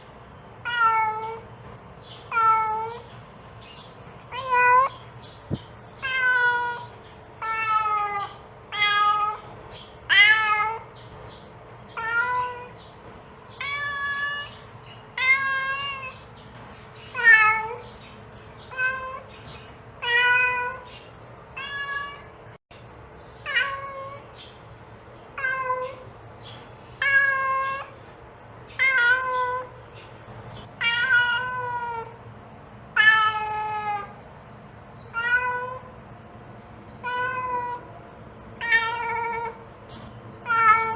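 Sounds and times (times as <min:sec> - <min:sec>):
cat meowing: 0:00.6 - 0:01.5, 0:02.3 - 0:03.1, 0:04.3 - 0:04.9, 0:06.0 - 0:09.5, 0:10.1 - 0:10.9, 0:11.9 - 0:12.8, 0:13.6 - 0:14.6, 0:15.2 - 0:16.2, 0:17.1 - 0:17.8, 0:18.6 - 0:19.3, 0:20.0 - 0:20.9, 0:21.6 - 0:22.4, 0:23.4 - 0:24.3, 0:25.4 - 0:26.0, 0:27.0 - 0:28.0, 0:28.8 - 0:29.8, 0:30.7 - 0:32.2, 0:32.9 - 0:34.2, 0:35.1 - 0:35.9, 0:37.0 - 0:37.9, 0:38.6 - 0:39.7, 0:40.4 - 0:40.9.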